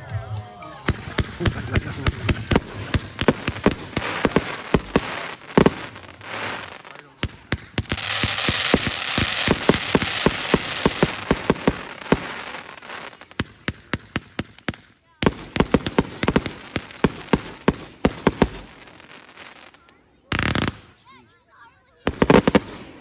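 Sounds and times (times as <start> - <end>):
firework hiss: 0.6 - 21.0
firework crackling pops: 0.8 - 21.0, 22.1 - 23.0
firework bang: 0.9 - 14.7.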